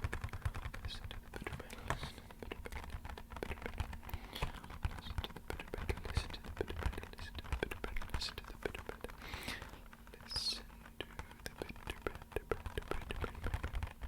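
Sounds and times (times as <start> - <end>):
rapid tapping on empty box: 0.0 - 14.0.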